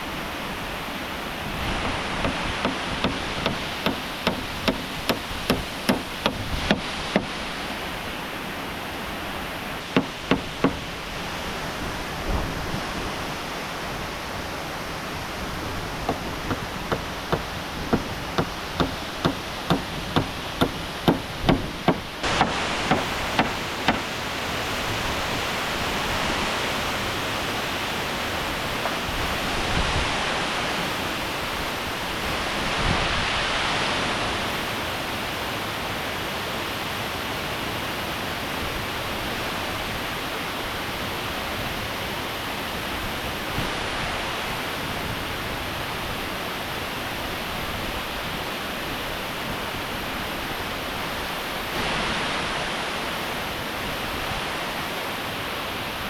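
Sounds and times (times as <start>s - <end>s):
waterfall rushing: 0.0s - 56.0s
regular knocks: 2.2s - 7.3s, 10.0s - 10.8s, 16.1s - 24.1s.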